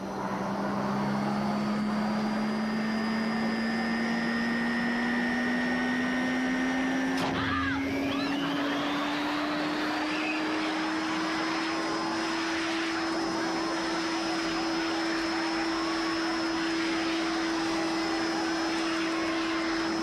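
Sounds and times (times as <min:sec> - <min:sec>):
motor whirring: 0:07.1 - 0:20.0.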